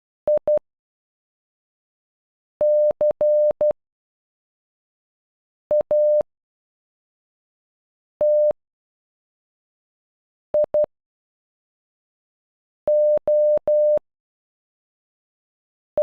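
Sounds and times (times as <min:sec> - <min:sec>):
morse code beeps: 0:02.6 - 0:03.8, 0:12.9 - 0:14.0.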